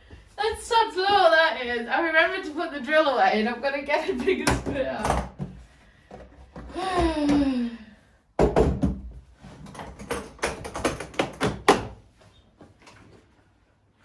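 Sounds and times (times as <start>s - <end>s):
taps and knocks of hard objects: 8.4s - 12.0s.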